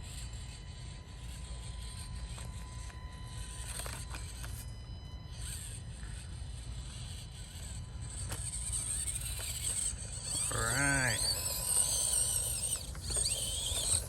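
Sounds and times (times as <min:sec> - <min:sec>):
electric motor whine: 0:00.0 - 0:14.0
light clicks and scrapes: 0:01.4 - 0:04.7, 0:11.2 - 0:14.0.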